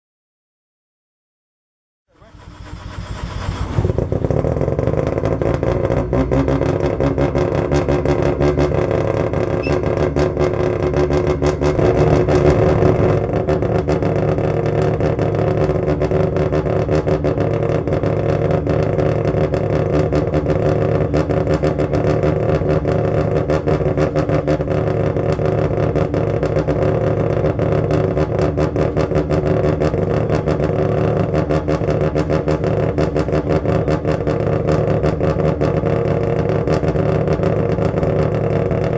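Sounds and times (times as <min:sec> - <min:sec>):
rotary engine running: 0:02.1 - 0:14.4.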